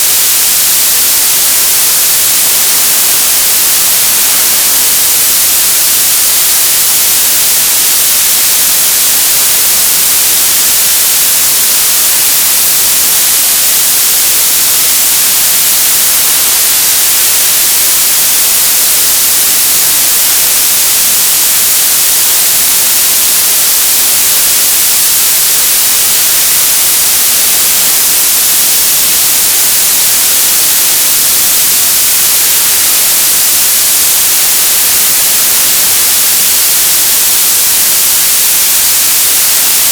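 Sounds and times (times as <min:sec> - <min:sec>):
television static hiss: 0:00.0 - 0:39.9.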